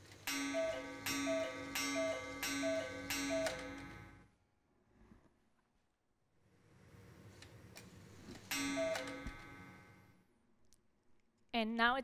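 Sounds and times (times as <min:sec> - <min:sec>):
cuckoo clock calling: 0:00.1 - 0:04.3, 0:08.5 - 0:10.0
sharp ringing stroke: 0:00.3 - 0:04.2.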